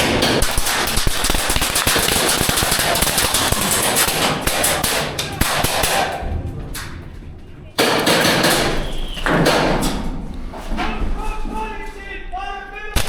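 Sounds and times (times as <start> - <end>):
airsoft gunfire crackle: 0.0 - 6.2.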